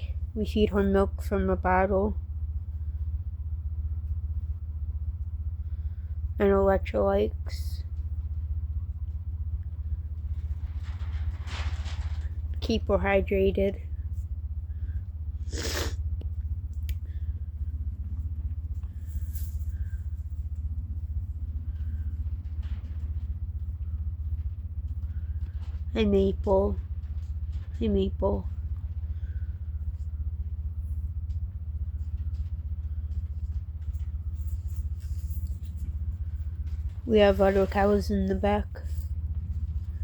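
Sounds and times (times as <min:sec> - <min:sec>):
low rumble: 0:00.0 - 0:40.0
faint clicks and rustles: 0:07.4 - 0:40.0
loud rustle: 0:10.2 - 0:12.6.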